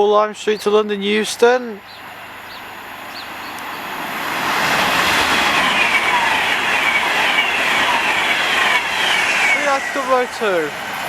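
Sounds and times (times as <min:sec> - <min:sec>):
train wheels rushing on rail: 0:01.8 - 0:11.0
short falling whines: 0:03.4 - 0:10.7.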